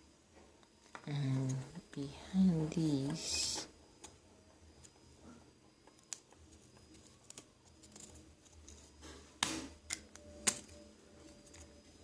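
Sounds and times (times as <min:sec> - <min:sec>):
plastic parts clicking and scraping: 0:05.8 - 0:11.9.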